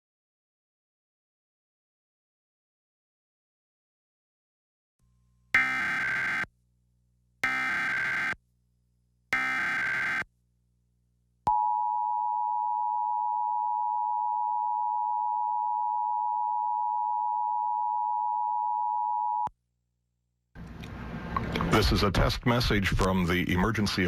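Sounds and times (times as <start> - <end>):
digital data bursts: 5.6 - 6.5, 7.4 - 8.4, 9.4 - 10.2.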